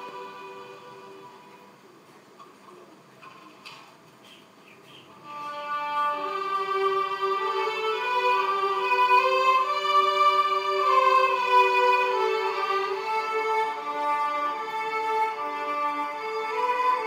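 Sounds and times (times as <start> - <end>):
violin melody: 0.0 - 1.8, 5.2 - 17.0
soft accompaniment: 0.0 - 17.0.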